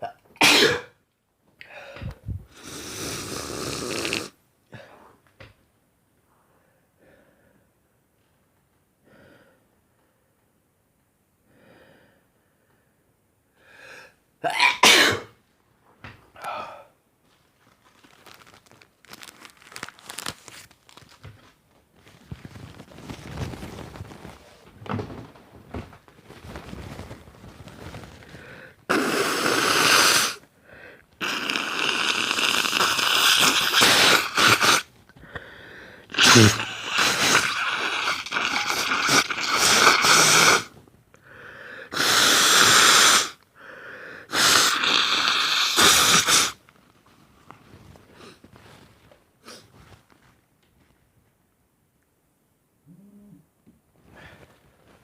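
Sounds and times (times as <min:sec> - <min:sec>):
man sneezing: 0:00.4 - 0:00.9, 0:14.6 - 0:15.3, 0:36.1 - 0:37.6
man blowing his nose: 0:02.5 - 0:04.4, 0:28.4 - 0:30.4, 0:31.2 - 0:34.9, 0:36.1 - 0:40.8, 0:41.8 - 0:43.4, 0:44.2 - 0:46.6
catching breaths: 0:28.1 - 0:28.9, 0:30.6 - 0:31.2, 0:35.2 - 0:36.1, 0:41.2 - 0:42.0, 0:43.6 - 0:44.4.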